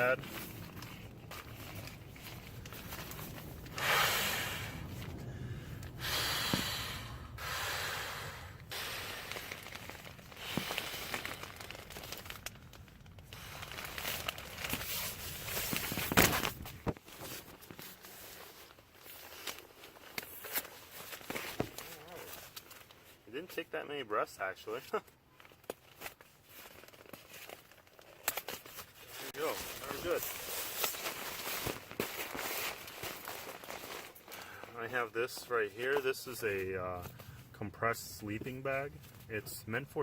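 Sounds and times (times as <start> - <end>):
person blowing into inflatable pad: 3.7 - 5.0, 6.0 - 9.6.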